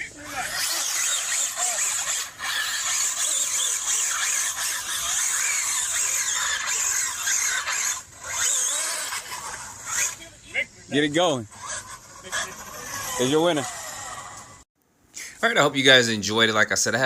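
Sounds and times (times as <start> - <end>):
electric toy car motor whine: 0.0 - 10.3, 11.4 - 14.7.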